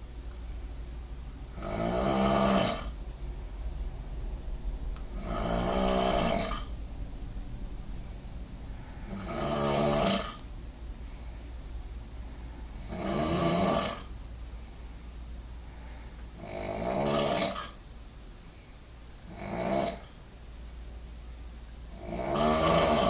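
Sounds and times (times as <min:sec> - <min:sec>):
person snoring heavily: 0:01.5 - 0:03.0, 0:05.1 - 0:06.7, 0:08.8 - 0:10.5, 0:12.8 - 0:14.1, 0:16.4 - 0:17.8, 0:19.3 - 0:20.1, 0:21.9 - 0:23.0.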